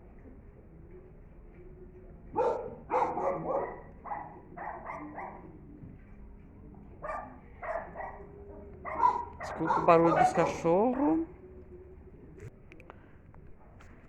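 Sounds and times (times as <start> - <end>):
dogs barking: 2.3 - 6.0, 6.9 - 11.4.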